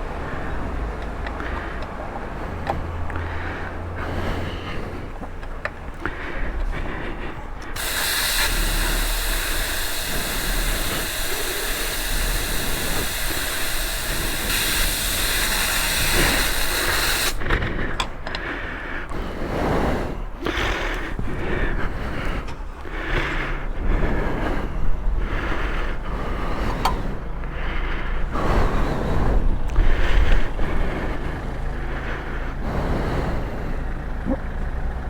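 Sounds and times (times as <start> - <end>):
compressed air hissing: 7.1 - 17.6.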